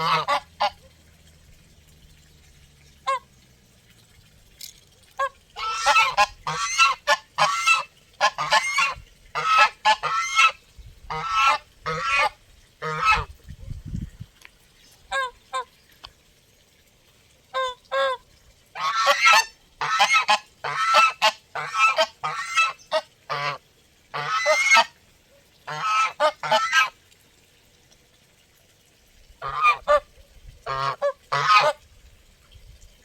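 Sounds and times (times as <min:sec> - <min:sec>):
geese honking: 0:00.0 - 0:00.8, 0:05.6 - 0:13.3, 0:18.8 - 0:23.6, 0:24.2 - 0:24.9, 0:25.7 - 0:26.9, 0:29.4 - 0:30.0, 0:30.7 - 0:31.8.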